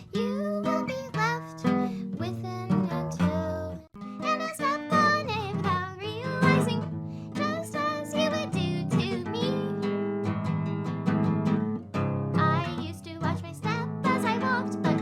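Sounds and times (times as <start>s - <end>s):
strummed acoustic guitar: 0.0s - 15.0s
person singing: 7.4s - 9.8s.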